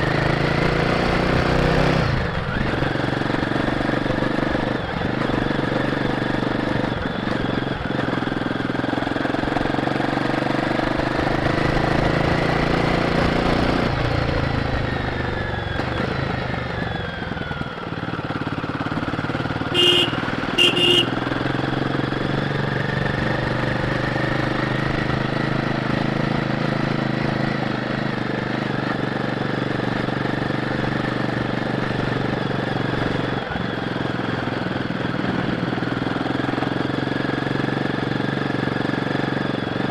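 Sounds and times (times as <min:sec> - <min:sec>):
motorcycle engine revving: 0:00.0 - 0:39.9
motorcycle horn beeps: 0:19.6 - 0:21.8.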